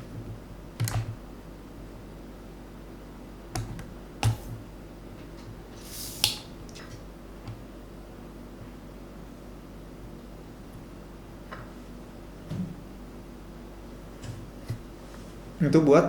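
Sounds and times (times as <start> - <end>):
short hiss of air: 5.8 - 6.5.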